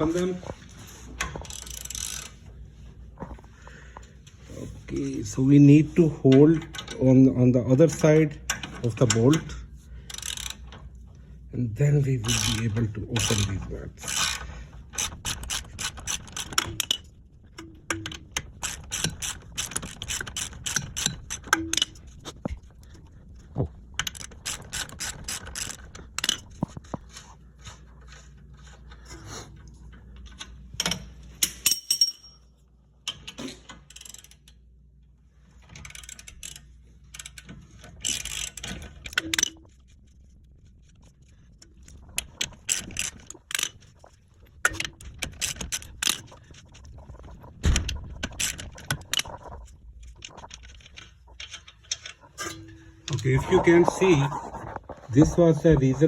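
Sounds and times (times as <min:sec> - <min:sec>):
ratchet wrench clicking: 0:01.4 - 0:02.4, 0:10.1 - 0:10.7, 0:12.3 - 0:22.1, 0:24.0 - 0:26.4, 0:33.8 - 0:34.6, 0:35.8 - 0:39.6.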